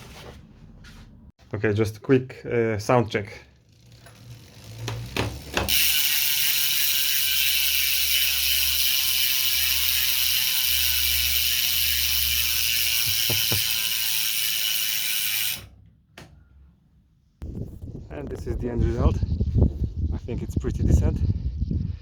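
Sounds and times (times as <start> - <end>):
bicycle freehub buzzing: 3.2 - 15.8.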